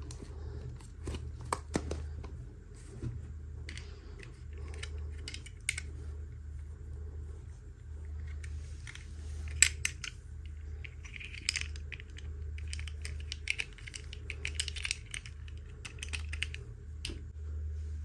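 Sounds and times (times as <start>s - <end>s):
steady low hum: 0.0s - 18.0s
plastic pieces clicking and tapping: 8.4s - 17.2s.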